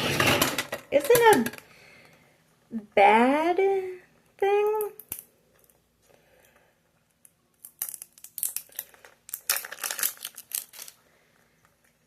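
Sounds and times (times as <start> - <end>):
plastic packaging crinkling: 7.9 - 11.1.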